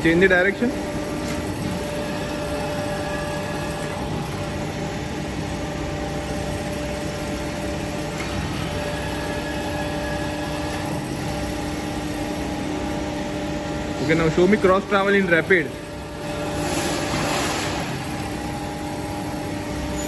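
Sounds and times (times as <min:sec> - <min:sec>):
surface grinder humming: 0:00.0 - 0:12.5.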